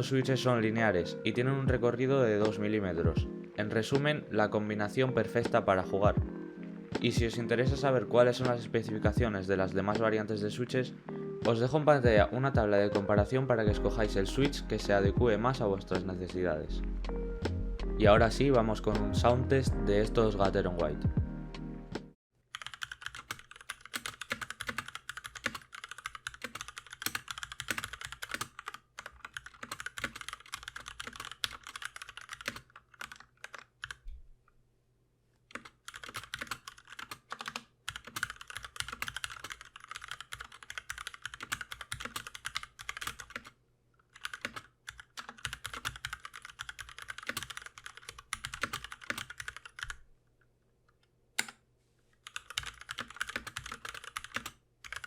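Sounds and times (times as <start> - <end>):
mechanical keyboard typing: 22.5 - 34.0, 35.5 - 50.0, 52.2 - 55.0.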